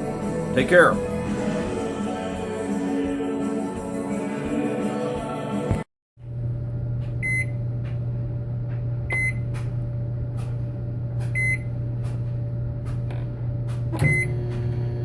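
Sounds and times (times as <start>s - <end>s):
low electrical hum: 6.2s - 15.0s.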